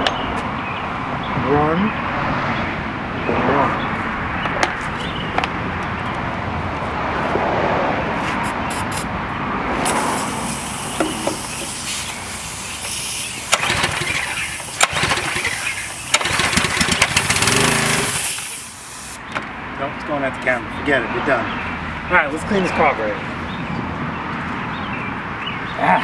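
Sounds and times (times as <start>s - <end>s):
small engine running roughly: 9.9s - 18.7s.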